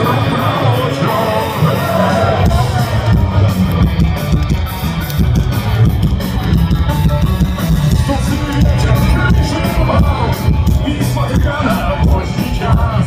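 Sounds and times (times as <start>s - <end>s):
driving drum kit: 0.0s - 13.0s
live rock band playing: 0.0s - 13.0s.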